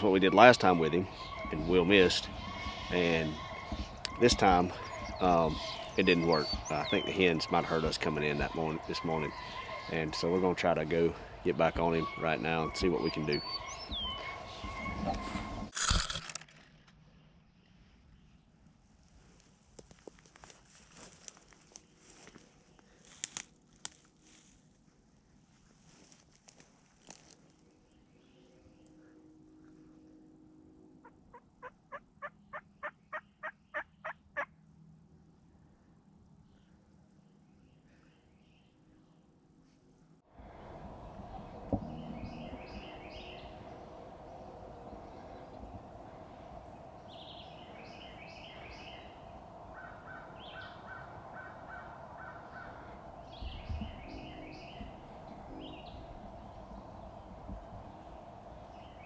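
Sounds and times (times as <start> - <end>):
birds chirping: 0.0 - 15.7, 40.4 - 59.0
background hum: 0.0 - 59.0
turkey yelps: 0.2 - 6.0, 7.3 - 10.1, 12.0 - 15.7, 31.0 - 34.5
low thump: 41.4 - 42.5.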